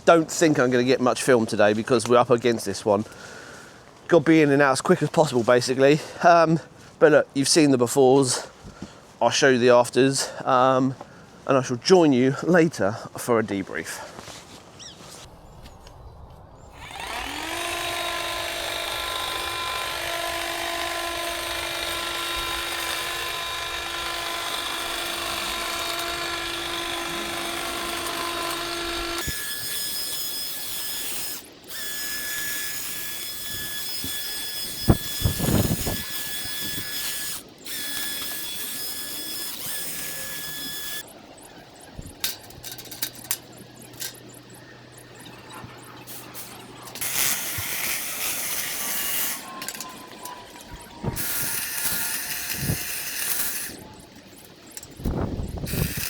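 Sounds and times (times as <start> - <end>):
garden power tools whining: 16.7 - 56.0.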